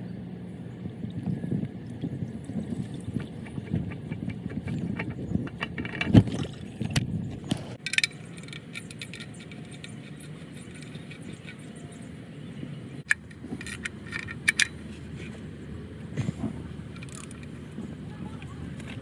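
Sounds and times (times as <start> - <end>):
tools and metal parts clinking: 2.6 - 7.0, 7.8 - 12.1, 13.1 - 15.5, 16.2 - 19.0.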